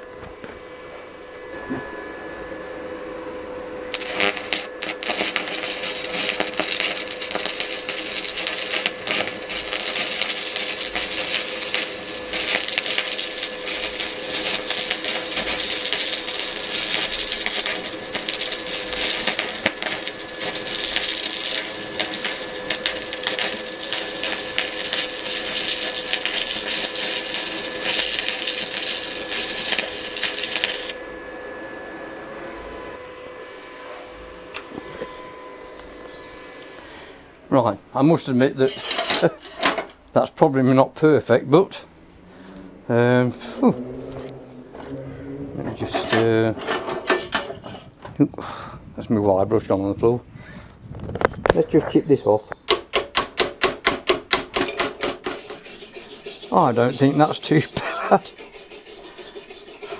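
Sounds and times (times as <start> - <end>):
welder hum: 0.0 - 48.9, 52.4 - 59.9
welding arc crackling: 3.9 - 31.0, 52.6 - 59.9.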